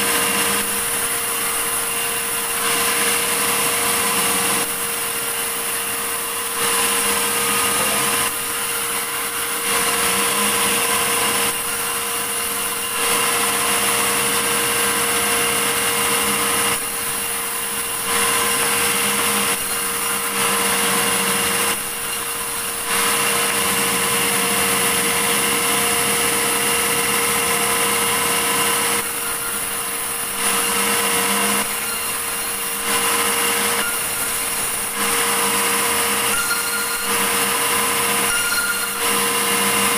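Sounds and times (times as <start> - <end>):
sawmill saw cutting log: 0.0 - 39.9.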